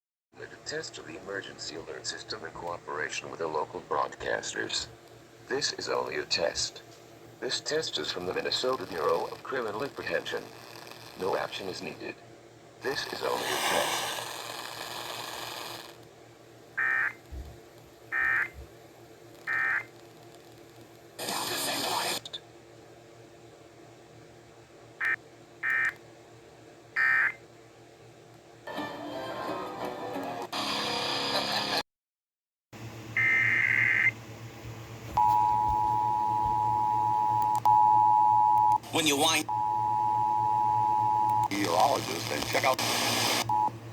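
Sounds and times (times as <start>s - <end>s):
music: 28.7s - 31.8s
high data tones burst: 35.2s - 43.7s.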